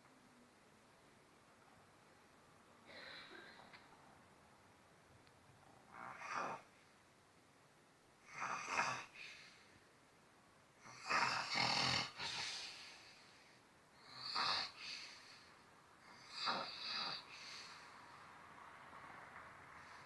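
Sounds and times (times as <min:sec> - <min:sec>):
quiet breaths: 0:00.0 - 0:07.3, 0:08.1 - 0:20.0
man snoring heavily: 0:05.9 - 0:06.7, 0:08.3 - 0:09.5, 0:10.8 - 0:13.1, 0:14.0 - 0:15.4, 0:16.1 - 0:17.9.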